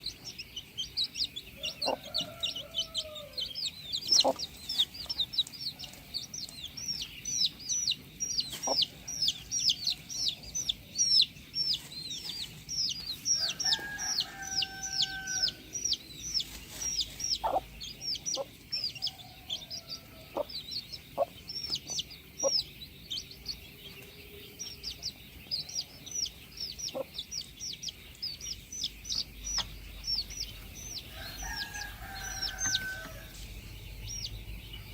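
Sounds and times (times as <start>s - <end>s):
chickens clucking: 0.0s - 34.9s
high chirping of chicks: 0.0s - 34.9s
rooster crowing: 1.6s - 3.6s, 13.4s - 15.7s, 19.0s - 20.5s, 31.0s - 33.4s.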